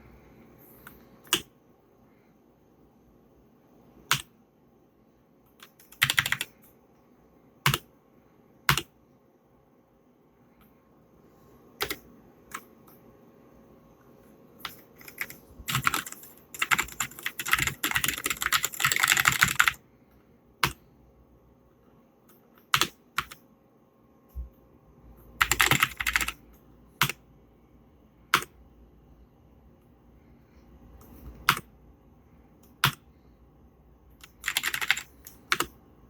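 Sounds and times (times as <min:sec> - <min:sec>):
mechanical keyboard typing: 0:04.1 - 0:04.3, 0:05.5 - 0:06.8, 0:07.6 - 0:07.9, 0:08.7 - 0:09.0, 0:11.8 - 0:12.7, 0:14.6 - 0:19.8, 0:20.6 - 0:20.8, 0:22.6 - 0:23.4, 0:25.4 - 0:26.4, 0:28.3 - 0:28.6, 0:31.3 - 0:31.7, 0:32.6 - 0:33.1, 0:34.1 - 0:35.8.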